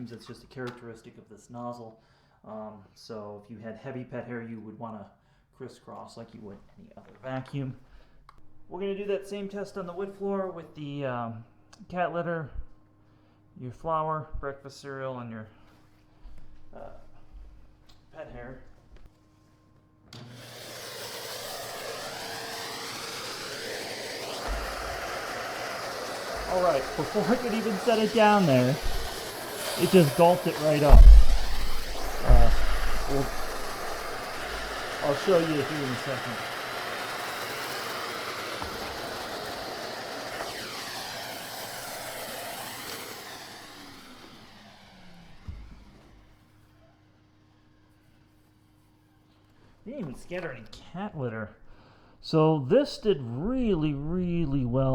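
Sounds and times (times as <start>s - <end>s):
vacuum cleaner running: 20.1s - 46.8s.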